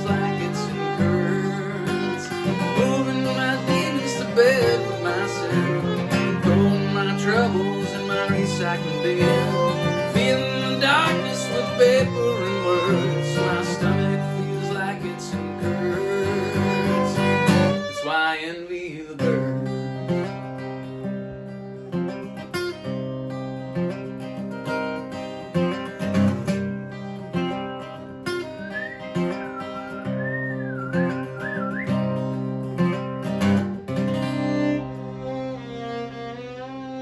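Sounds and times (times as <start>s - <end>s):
fiddle melody: 0.0s - 37.0s
strummed acoustic guitar: 0.0s - 37.0s.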